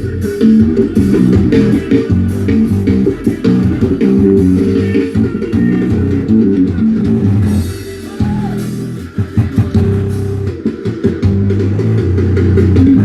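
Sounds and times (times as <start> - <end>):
rock music through speakers: 0.0 - 13.0.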